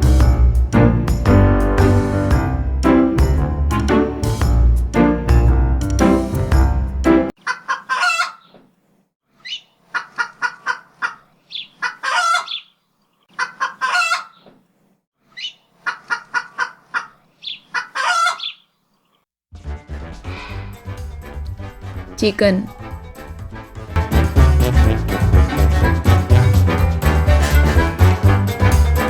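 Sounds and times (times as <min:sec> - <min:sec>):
chicken clucking and squawking: 0:07.4 - 0:08.5, 0:09.5 - 0:12.7, 0:13.3 - 0:14.4, 0:15.4 - 0:18.6.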